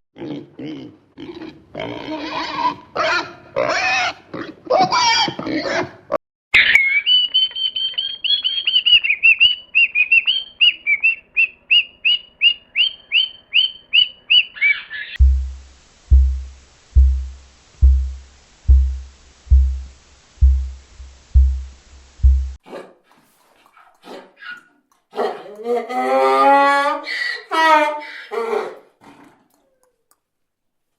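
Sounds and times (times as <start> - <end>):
bird chirping rapidly: 6.6 - 15.6
deep thumps: 15.2 - 22.6
faint hiss: 15.2 - 22.6.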